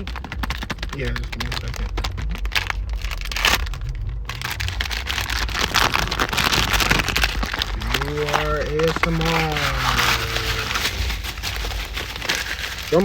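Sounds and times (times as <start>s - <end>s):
plastic packaging crackling: 0.0s - 13.0s.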